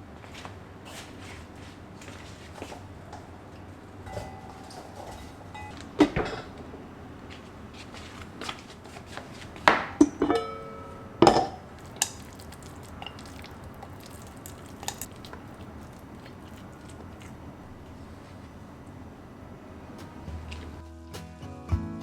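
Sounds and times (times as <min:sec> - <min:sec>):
low background noise: 0:00.0 - 0:20.8
kitchenware knocking and clinking: 0:04.1 - 0:06.6, 0:09.7 - 0:11.6.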